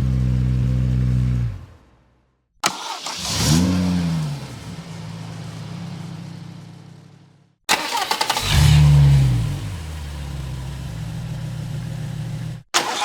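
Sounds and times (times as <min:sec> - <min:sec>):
car engine revving and idling: 0:00.0 - 0:02.0, 0:02.6 - 0:13.0
car starter cranking: 0:02.6 - 0:03.7, 0:07.7 - 0:09.1, 0:12.3 - 0:13.0.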